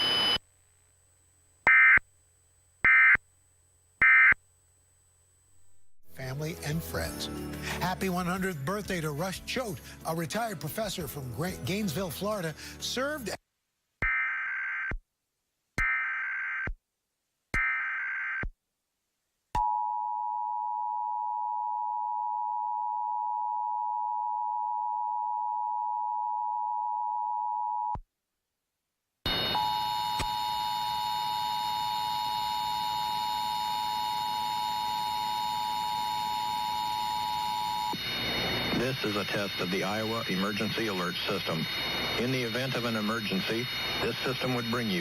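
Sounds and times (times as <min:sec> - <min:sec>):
faint high whines: 0:00.0 - 0:06.0, 0:29.3 - 0:45.0
data burst tones: 0:29.3 - 0:45.0.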